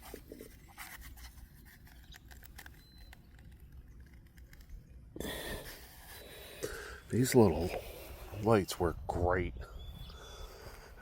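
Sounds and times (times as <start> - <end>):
rustle: 0.0 - 3.4
faint clicks and light scraping: 0.0 - 4.9.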